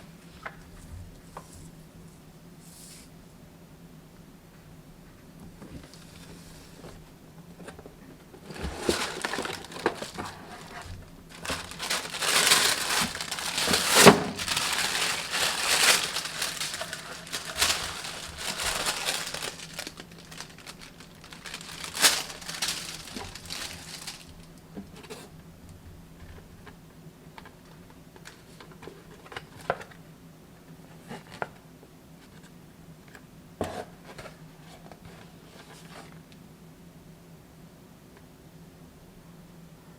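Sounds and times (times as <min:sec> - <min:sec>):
packaging crinkling: 0:08.4 - 0:24.6.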